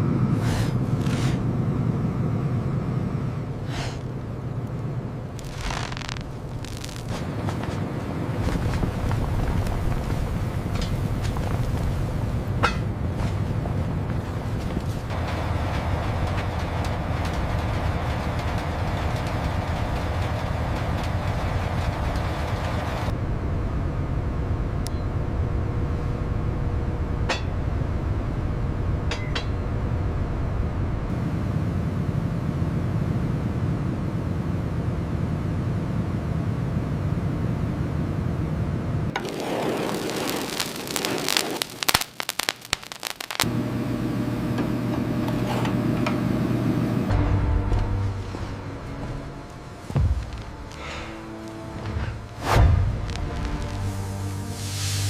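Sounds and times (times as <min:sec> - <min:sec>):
mechanical hum with low drone: 0:00.0 - 0:40.1, 0:43.3 - 0:55.0
steady low rumble: 0:00.0 - 0:45.3, 0:46.0 - 0:55.0
sharp crackling and snapping: 0:04.0 - 0:12.8, 0:39.2 - 0:43.5, 0:49.4 - 0:54.7.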